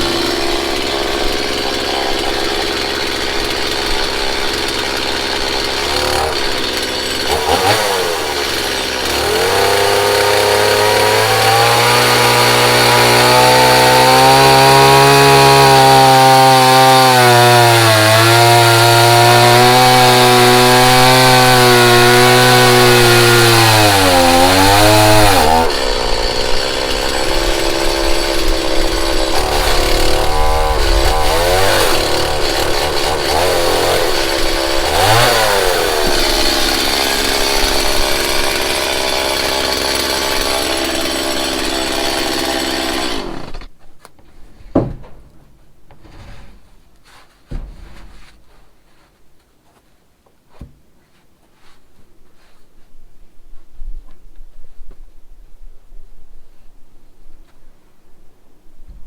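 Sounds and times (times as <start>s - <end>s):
chainsaw cutting log: 0.0s - 43.8s.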